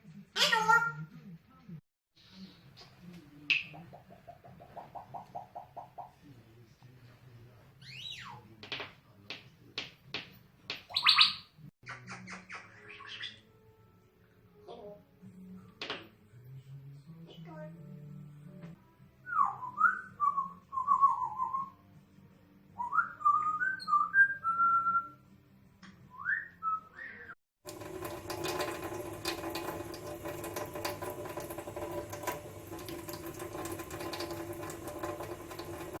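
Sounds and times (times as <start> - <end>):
tap running water: 27.6 - 36.0.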